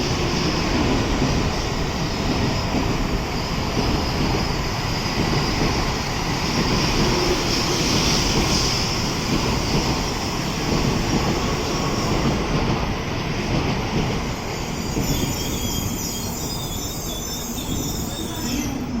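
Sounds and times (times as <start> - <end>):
train wheels rumbling: 0.0 - 19.0
high wheel squeal: 14.5 - 19.0.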